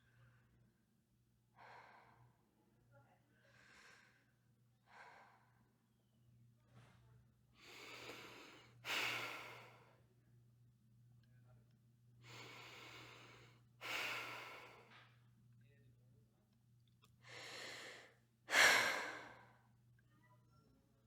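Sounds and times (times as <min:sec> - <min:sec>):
girl breathing slowly: 0:01.6 - 0:02.4, 0:12.2 - 0:14.9, 0:17.2 - 0:19.6.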